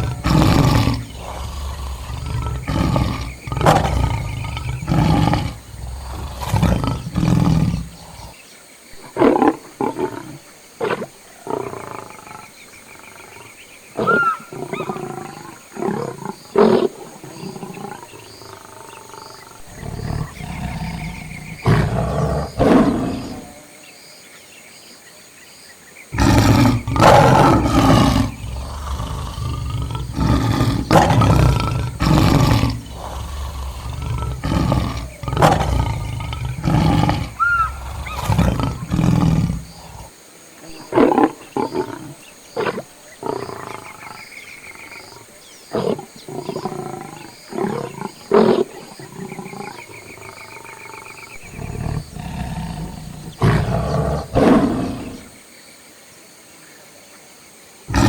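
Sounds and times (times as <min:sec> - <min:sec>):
lions growling and calling: 0:00.0 - 0:23.7, 0:26.2 - 0:55.4.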